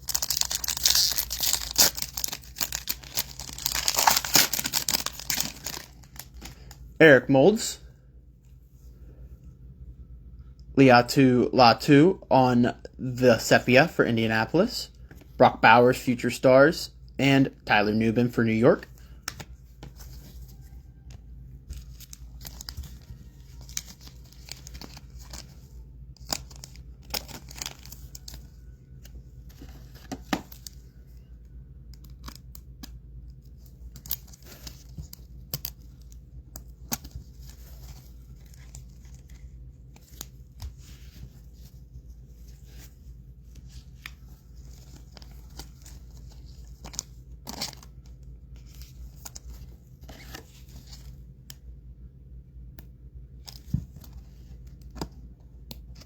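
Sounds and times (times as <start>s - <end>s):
card wrappers tearing and crinkling: 0.0s - 6.8s, 21.7s - 25.6s, 26.2s - 28.6s, 33.5s - 41.3s, 43.8s - 51.1s
cards being handled: 0.0s - 6.8s, 19.0s - 51.7s, 52.7s - 56.0s
low steady hum: 0.0s - 56.0s.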